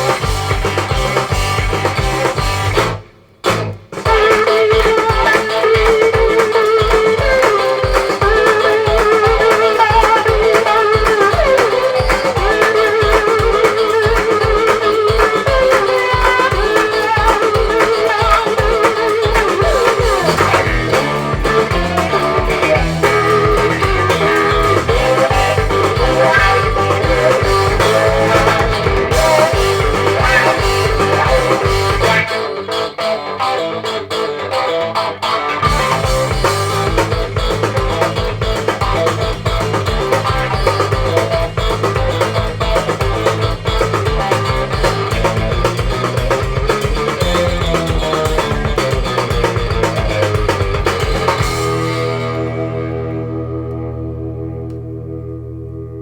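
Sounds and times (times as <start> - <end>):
bass line: 0.0 - 32.3, 35.6 - 56.0
steady drum beat: 0.0 - 32.5, 35.6 - 52.6
electric guitar lead lines: 0.0 - 56.0.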